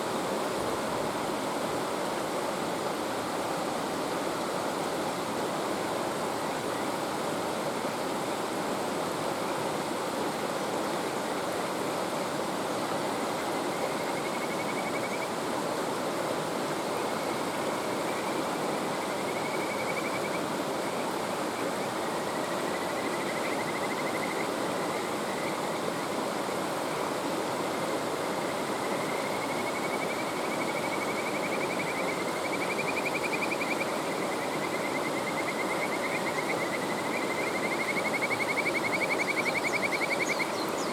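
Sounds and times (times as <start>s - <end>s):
mountain stream running: 0.0s - 40.9s
frogs trilling: 13.6s - 15.4s, 18.0s - 20.4s, 21.6s - 26.1s, 28.8s - 40.9s.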